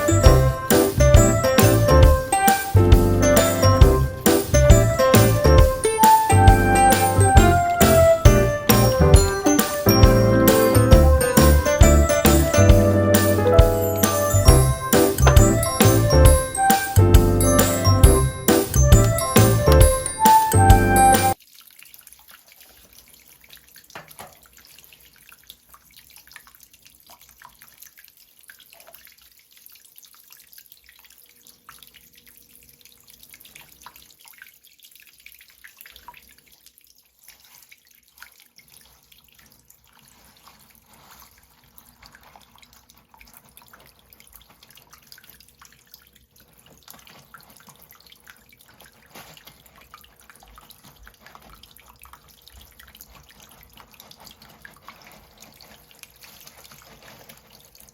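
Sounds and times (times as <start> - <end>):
water trickling: 0.0 - 57.9
small drips and splashes: 21.3 - 57.9.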